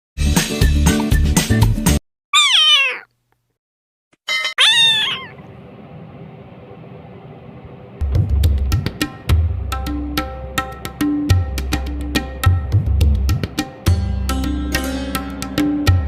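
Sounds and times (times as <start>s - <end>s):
music: 0.2s - 2.0s, 8.0s - 16.0s
kitten meowing: 2.4s - 3.1s, 4.6s - 5.4s.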